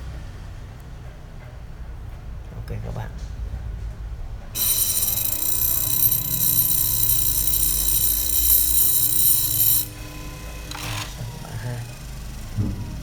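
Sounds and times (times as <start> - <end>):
grinder whining: 4.6 - 11.2.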